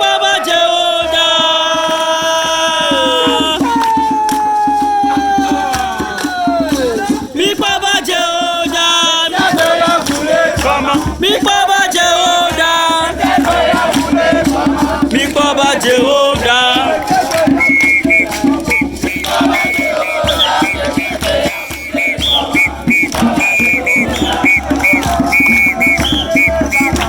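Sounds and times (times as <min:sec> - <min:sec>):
group singing a chant: 0:00.0 - 0:27.0
rattles shaken: 0:05.4 - 0:27.0.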